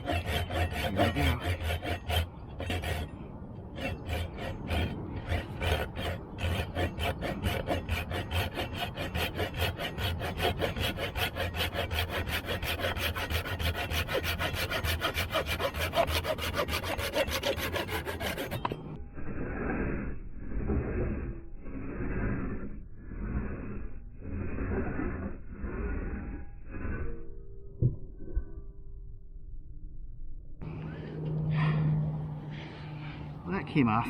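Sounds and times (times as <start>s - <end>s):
saw rasping through wood: 0.0s - 27.2s.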